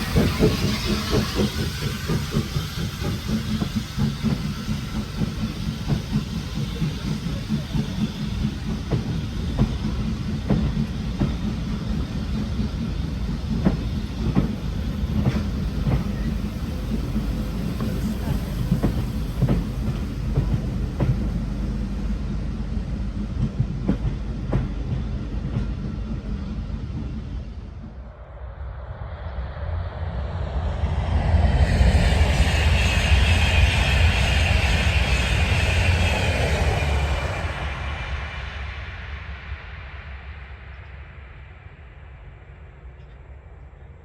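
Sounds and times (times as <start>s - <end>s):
train rumbling past: 0.0s - 44.0s.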